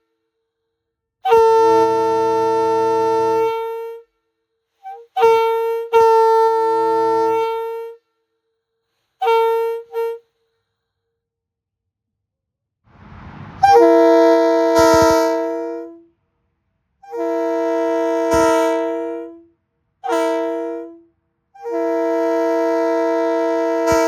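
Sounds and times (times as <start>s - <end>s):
train horn blasts: 1.2s - 4.1s, 5.2s - 8.0s, 9.2s - 10.2s, 13.6s - 16.0s, 17.0s - 19.4s, 20.0s - 21.0s, 21.6s - 24.0s.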